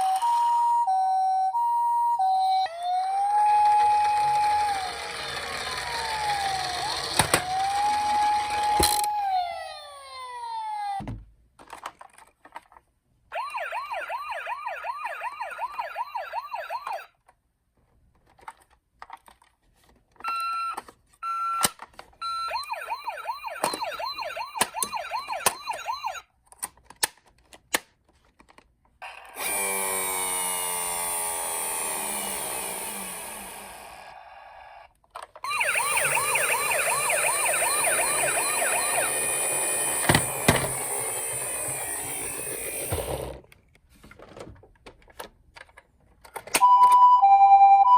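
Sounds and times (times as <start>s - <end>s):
toy electronic sirens wailing: 0.0s - 11.0s, 13.3s - 17.1s, 20.2s - 26.2s, 29.4s - 43.3s, 46.6s - 47.9s.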